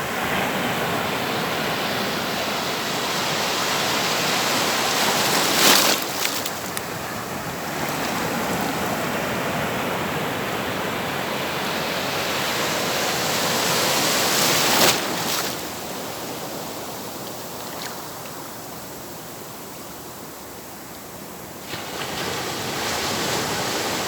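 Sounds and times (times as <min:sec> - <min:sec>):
ocean wave breaking: 0:00.0 - 0:16.6
water washing on shore: 0:00.1 - 0:10.3, 0:11.6 - 0:18.4.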